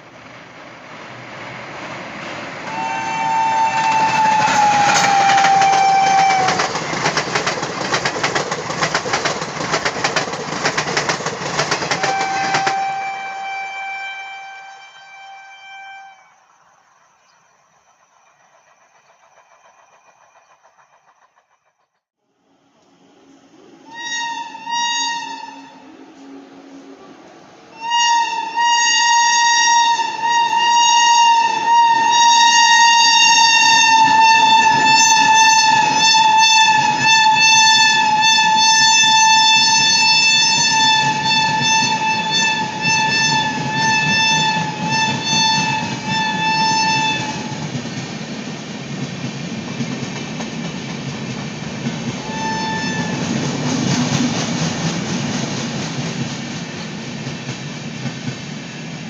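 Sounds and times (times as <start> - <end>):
train rumble: 0.0 - 59.0
locomotive horn: 2.6 - 6.8, 11.9 - 16.4, 23.2 - 47.8, 52.2 - 53.5
wheel clicks over rail joints: 6.4 - 12.8.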